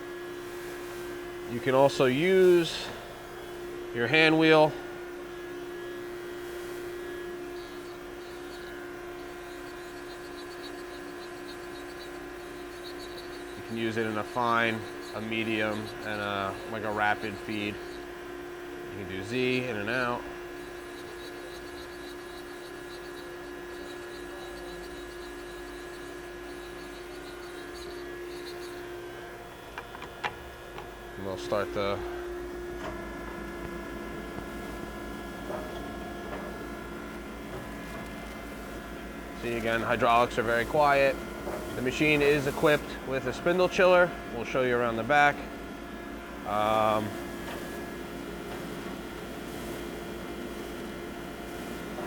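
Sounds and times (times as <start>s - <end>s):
faint high whine: 0.0s - 52.0s
surface grinder humming: 0.6s - 52.0s
faint high ticking: 6.8s - 18.1s, 20.3s - 29.0s.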